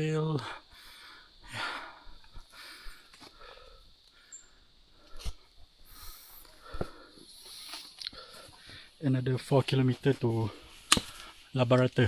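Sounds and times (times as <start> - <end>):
person breathing hard: 0.4 - 9.0.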